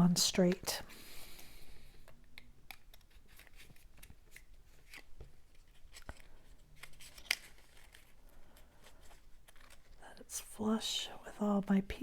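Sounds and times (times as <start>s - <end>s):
paper rustling: 2.7s - 10.0s.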